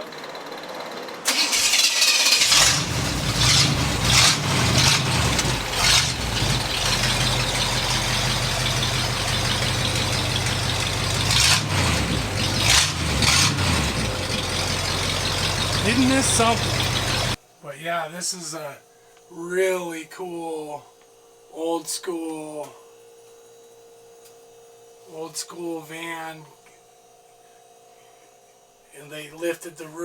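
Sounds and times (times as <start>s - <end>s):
engine cranking and starting: 1.2s - 17.4s
engine idling: 1.3s - 17.4s
engine throttle blips: 1.3s - 17.4s.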